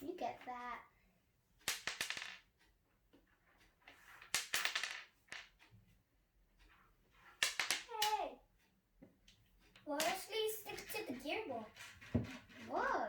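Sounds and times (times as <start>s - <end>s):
magnetic balls clicking together: 1.6s - 5.7s, 6.7s - 8.5s, 9.1s - 13.0s.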